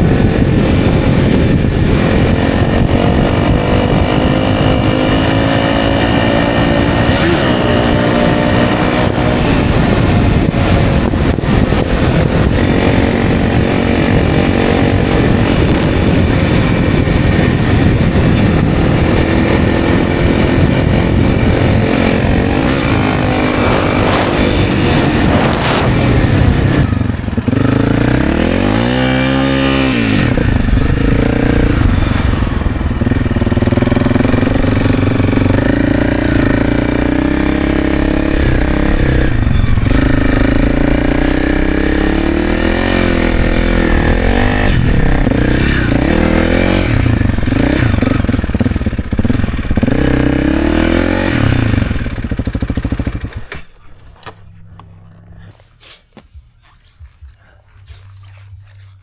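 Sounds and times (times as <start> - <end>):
motorcycle engine revving: 0.0 - 55.6.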